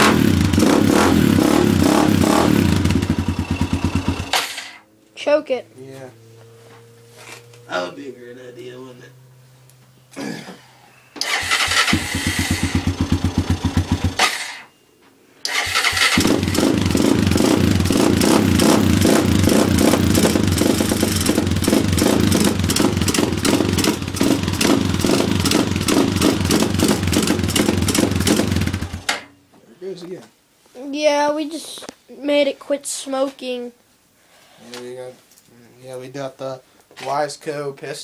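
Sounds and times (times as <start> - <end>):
quad bike engine starting and idling: 0.0 - 4.8, 11.2 - 14.7, 15.4 - 29.3.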